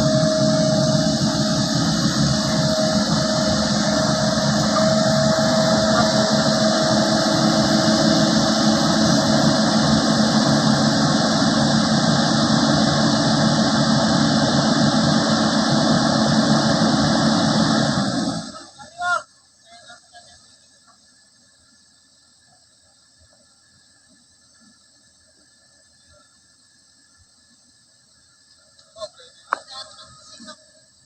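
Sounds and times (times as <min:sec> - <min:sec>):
diesel engine running: 0:00.0 - 0:18.7
faint steady whine: 0:00.0 - 0:31.0.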